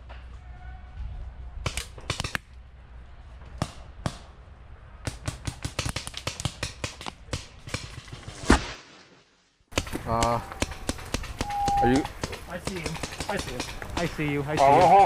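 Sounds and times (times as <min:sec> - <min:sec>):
paintball markers firing: 0:09.7 - 0:14.9.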